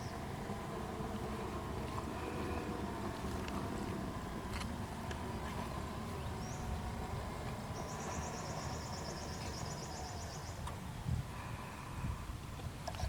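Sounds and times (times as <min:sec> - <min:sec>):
steady low rush: 0:00.0 - 0:12.6.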